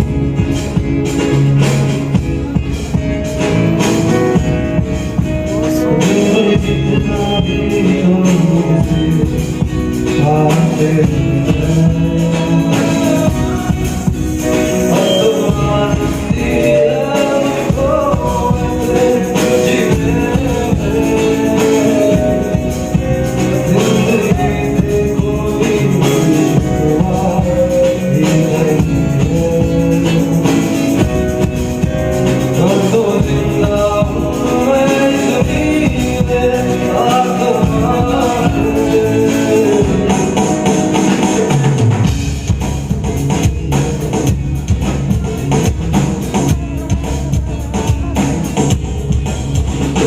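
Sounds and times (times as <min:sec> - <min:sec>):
live band playing: 0:00.0 - 0:50.0
person singing: 0:02.4 - 0:41.9.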